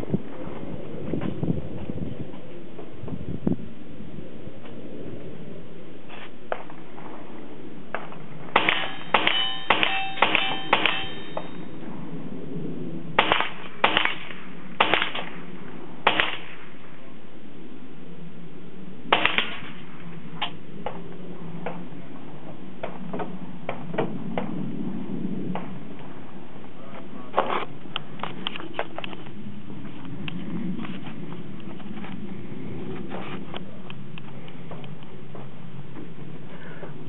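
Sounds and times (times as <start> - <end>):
rifle shots: 8.5 - 11.6, 13.2 - 16.8, 19.1 - 20.0
steel targets ringing: 8.6 - 11.8.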